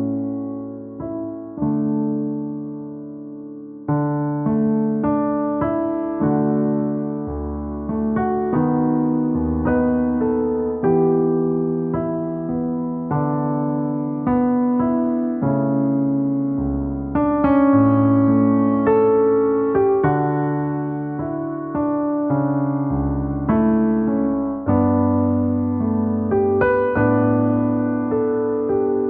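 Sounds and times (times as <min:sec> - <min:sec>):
slow gentle piano music: 0:00.0 - 0:29.0.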